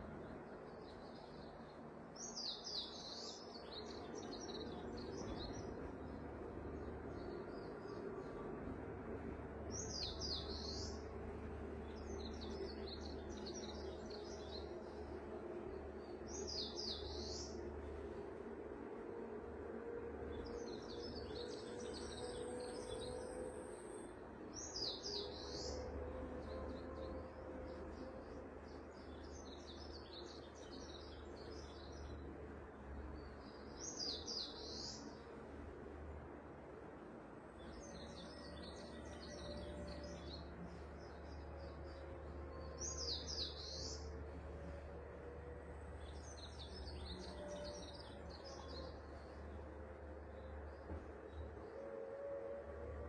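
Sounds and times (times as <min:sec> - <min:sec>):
bird chirping: 0:20.3 - 0:32.3, 0:37.6 - 0:52.4.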